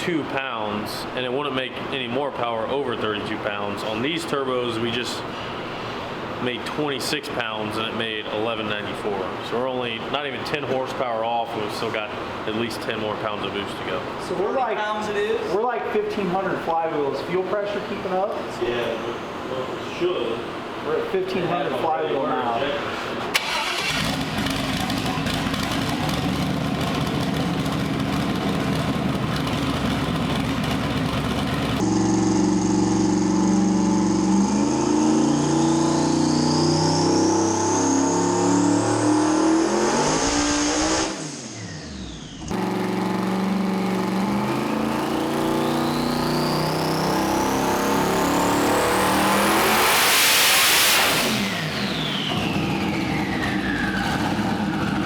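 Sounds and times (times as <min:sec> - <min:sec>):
engine revving on dyno: 0:23.4 - 0:28.9, 0:31.7 - 0:55.0
turbo whine: 0:31.3 - 0:55.0.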